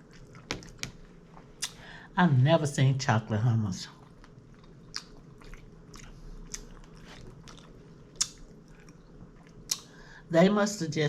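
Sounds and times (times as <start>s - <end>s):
person chewing: 0.0s - 1.8s, 4.0s - 10.1s.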